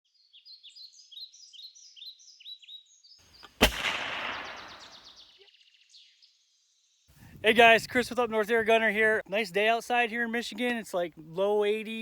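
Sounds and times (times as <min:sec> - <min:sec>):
birds chirping: 0:00.2 - 0:06.5
air pistol shot: 0:03.4 - 0:05.1.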